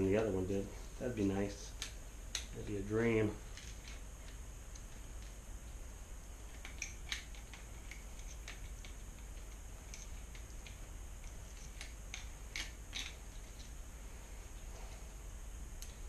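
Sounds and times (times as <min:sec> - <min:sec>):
small clicks of bicycle parts: 0:01.7 - 0:02.6, 0:03.5 - 0:05.4, 0:06.5 - 0:13.8, 0:15.8 - 0:16.0.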